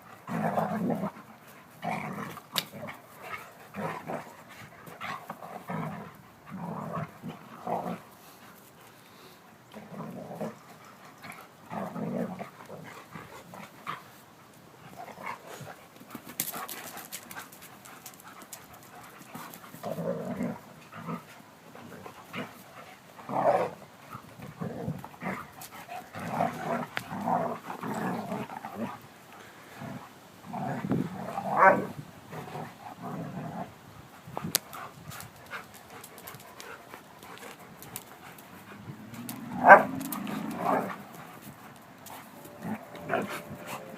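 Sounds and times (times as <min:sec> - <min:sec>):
dogs play growling: 0:00.0 - 0:43.9
dogs panting: 0:12.4 - 0:30.1, 0:34.1 - 0:43.9.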